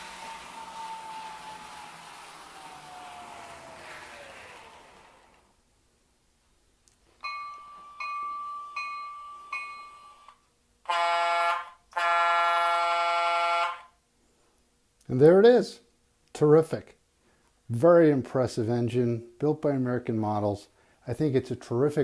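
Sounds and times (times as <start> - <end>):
falling electronic whine: 0.0 - 5.6
model locomotive bell ringing: 7.2 - 13.9
model locomotive horn blasts: 9.4 - 14.0.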